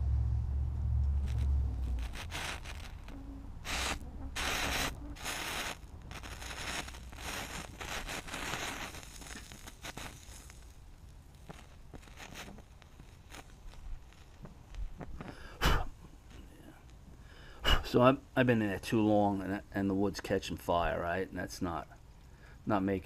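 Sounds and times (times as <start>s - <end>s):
low rumble: 0.0s - 9.7s
scraping and rubbing on metal: 1.2s - 10.6s.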